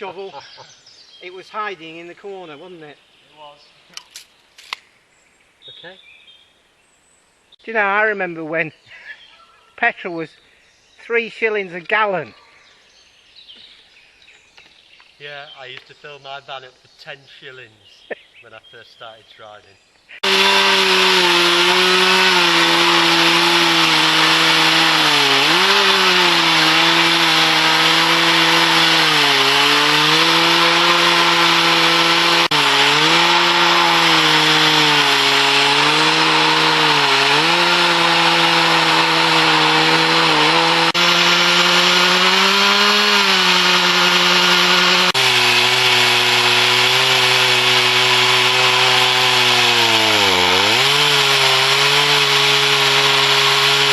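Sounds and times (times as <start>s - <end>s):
chainsaw cutting through log: 20.1s - 53.9s.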